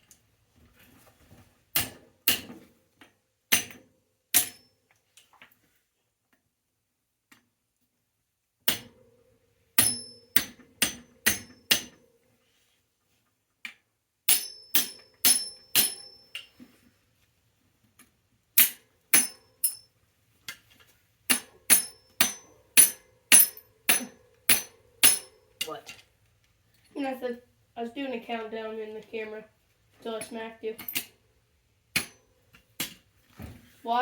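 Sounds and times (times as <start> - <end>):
hammer striking metal: 9.8 - 11.9, 14.3 - 16.5, 18.6 - 19.8, 21.3 - 25.4
short metallic ring: 19.2 - 19.9.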